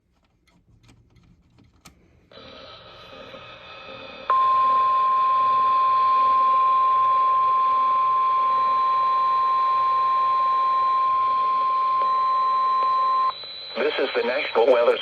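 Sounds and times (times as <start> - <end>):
loud steady alarm tone: 2.3 - 13.7
radio static hiss: 2.4 - 4.3, 13.3 - 15.0.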